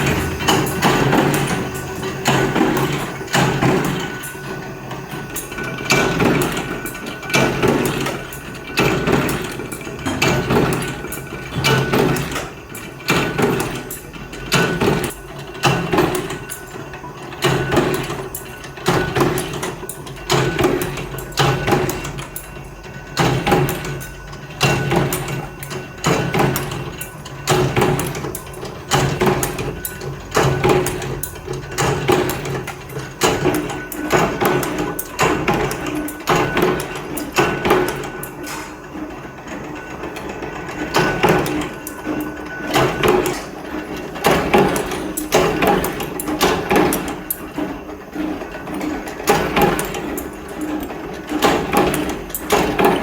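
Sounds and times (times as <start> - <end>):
steady machine hum: 0.0 - 53.0.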